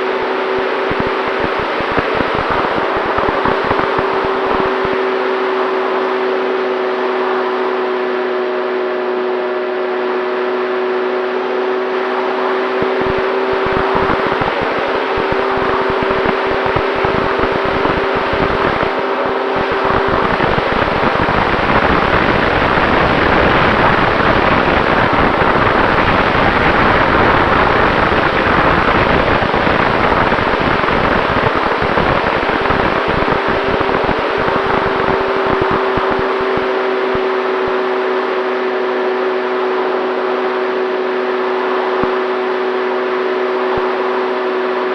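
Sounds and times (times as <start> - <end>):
electric motor and propeller whine: 0.0 - 44.9
wind buffeting on microphone: 0.4 - 5.3, 11.9 - 37.8.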